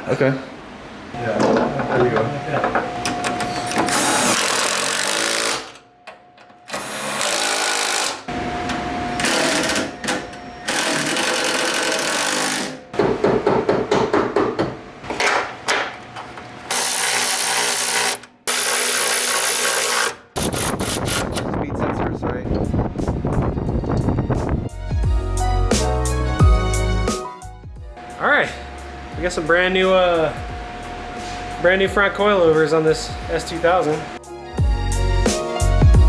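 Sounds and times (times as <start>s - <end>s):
power tools on bolts: 3.1s - 5.8s, 6.4s - 12.8s, 16.7s - 21.5s.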